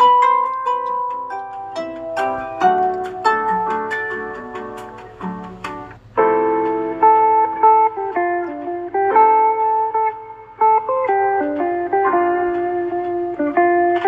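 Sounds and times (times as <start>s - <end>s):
plucked harp-like ringtone: 0.0s - 8.5s
plucked guitar-like ringtone: 0.0s - 14.0s.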